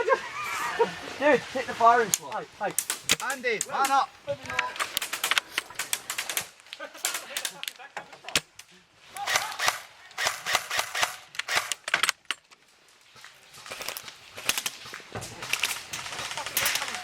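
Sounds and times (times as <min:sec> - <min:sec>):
airsoft rifle shots: 0:09.2 - 0:12.2.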